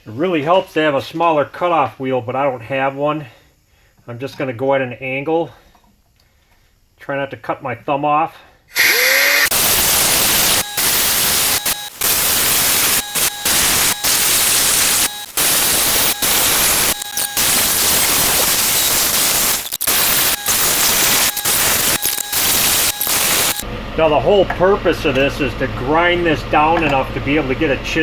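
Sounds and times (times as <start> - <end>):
cutoff wheel grinding metal: 8.8 - 23.6.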